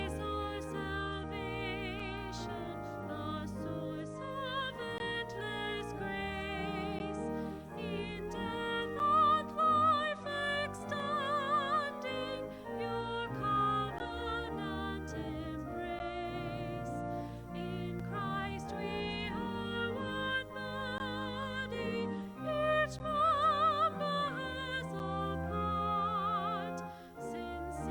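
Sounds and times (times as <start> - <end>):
classical singing with vibrato: 0.0 - 27.9
instrumental accompaniment: 0.0 - 27.9.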